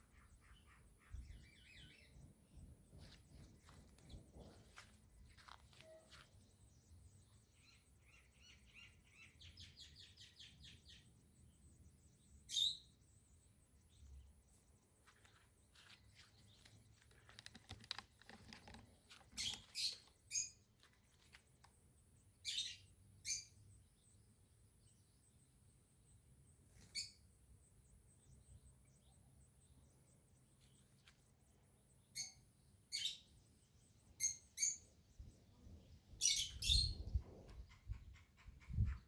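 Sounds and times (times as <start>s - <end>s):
birds chirping: 0.0s - 25.2s, 26.8s - 39.0s
faint clicks and rustles: 15.0s - 21.8s
sharp bird calls: 15.8s - 20.6s.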